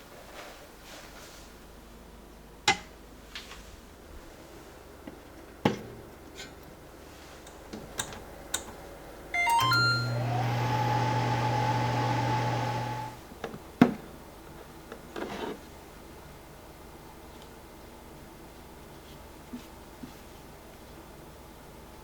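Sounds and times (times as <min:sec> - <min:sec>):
microwave oven humming: 0:07.8 - 0:13.3
microwave keypad beeps: 0:09.4 - 0:13.1.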